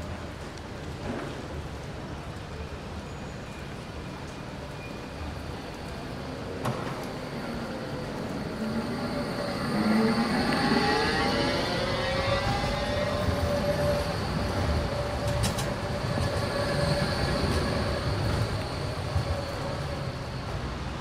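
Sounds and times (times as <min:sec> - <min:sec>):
tram rumbling: 0:00.0 - 0:21.0.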